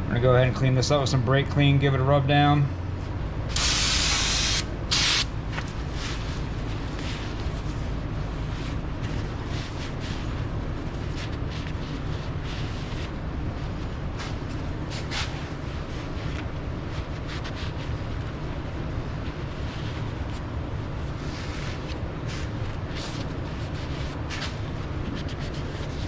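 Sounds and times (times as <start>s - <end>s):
steady low hum: 0.0s - 26.0s
aerosol spray hissing: 3.6s - 5.3s.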